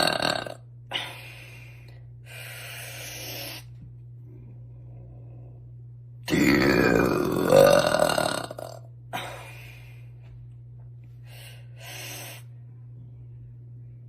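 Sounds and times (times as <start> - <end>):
woman burping: 0.0 - 0.6, 6.3 - 9.3.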